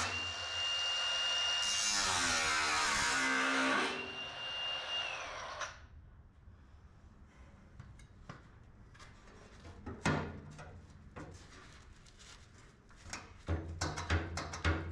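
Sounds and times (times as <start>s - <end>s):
angle grinder whining: 0.0s - 5.7s.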